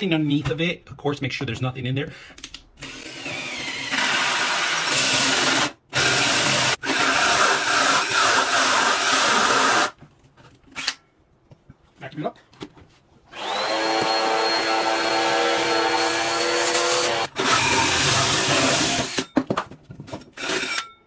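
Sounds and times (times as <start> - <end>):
power drill cutting through wood: 2.8 - 9.9, 13.3 - 19.3, 20.4 - 20.9.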